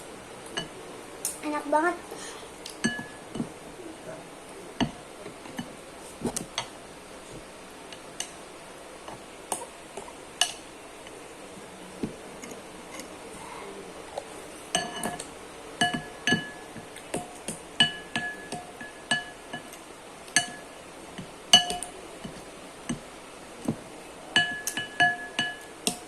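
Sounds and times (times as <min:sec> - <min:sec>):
cutlery clinking against bowl: 0:02.7 - 0:03.5, 0:14.7 - 0:20.7, 0:21.5 - 0:22.4, 0:24.4 - 0:26.0.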